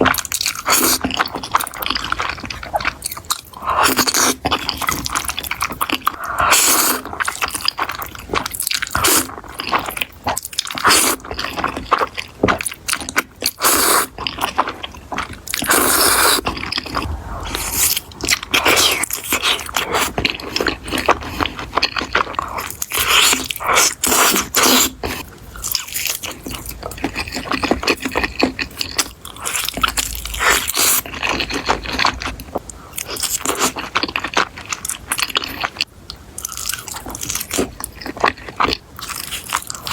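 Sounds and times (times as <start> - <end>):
person chewing crunchy food: 32.9 - 39.9.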